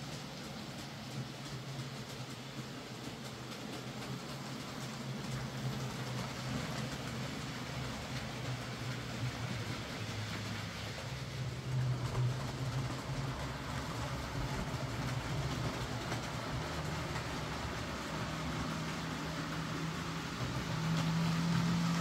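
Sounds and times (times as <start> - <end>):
model train motor hum: 0.0 - 22.0
model train wheels rattling: 0.0 - 22.0.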